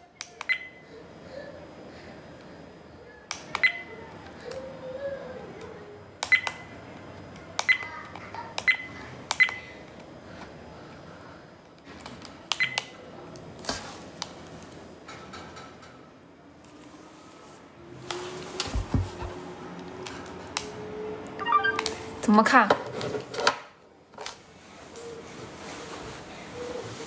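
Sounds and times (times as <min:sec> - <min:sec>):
sharp clicks with high beeps: 0:21.4 - 0:22.1.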